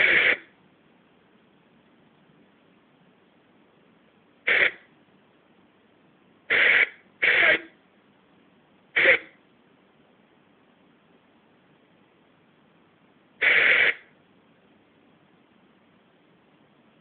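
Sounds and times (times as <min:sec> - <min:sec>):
short bursts of hiss: 0:00.0 - 0:00.5, 0:04.5 - 0:04.8, 0:06.5 - 0:07.7, 0:09.0 - 0:09.3, 0:13.4 - 0:14.1
faint steady hiss: 0:00.0 - 0:17.0.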